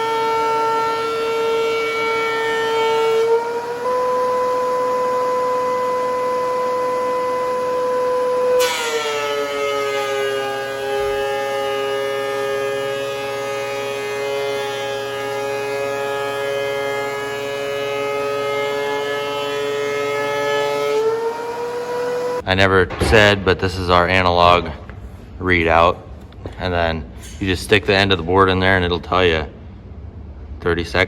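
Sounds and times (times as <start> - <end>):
thickness planer whining: 0.0 - 22.4.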